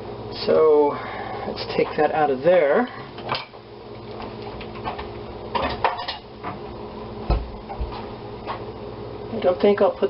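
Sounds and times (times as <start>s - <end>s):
utensils clinking on dishes: 5.6s - 6.3s.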